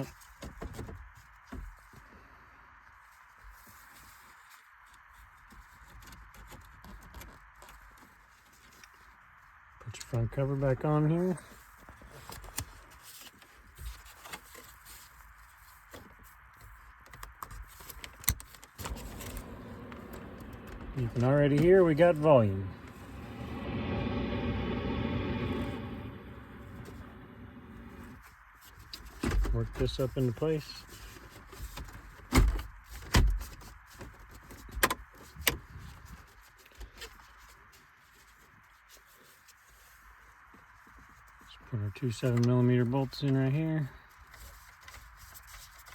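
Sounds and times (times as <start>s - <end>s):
car speakers hissing: 18.8s - 28.2s.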